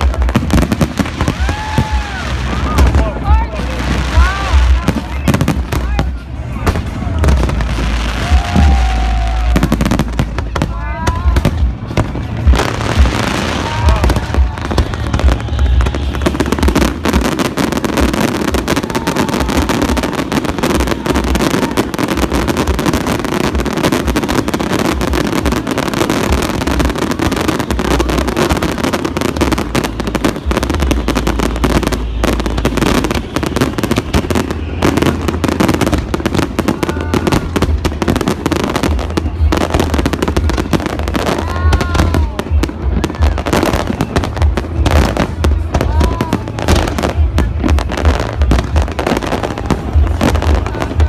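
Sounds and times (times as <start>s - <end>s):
fireworks booms: 0.0s - 51.0s
fireworks crackling and popping: 0.0s - 51.0s.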